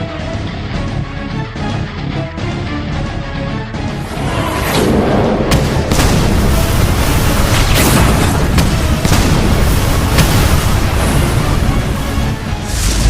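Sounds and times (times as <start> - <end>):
music: 0.0 - 13.0
rumbling blast roar: 4.0 - 13.0
sharp impact cracks: 4.8 - 12.0.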